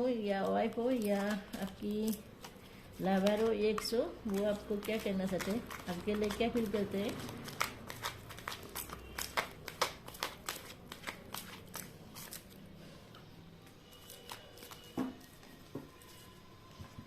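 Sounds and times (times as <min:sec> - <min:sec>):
cards being shuffled: 0:00.4 - 0:12.6.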